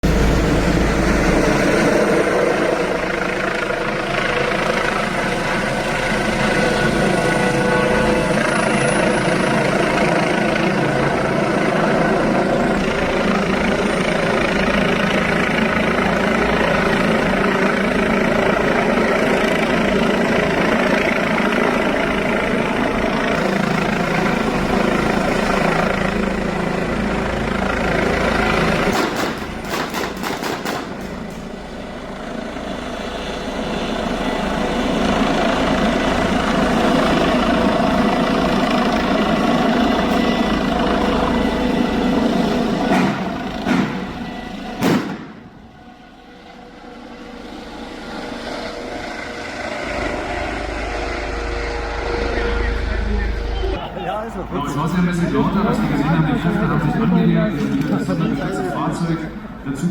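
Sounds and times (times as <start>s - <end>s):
helicopter running loudly: 0.0s - 59.9s.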